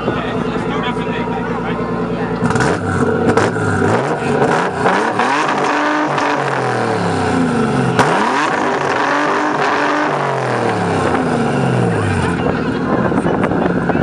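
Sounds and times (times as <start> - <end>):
car engine revving: 0.0 - 14.0
exhaust crack: 0.0 - 14.0.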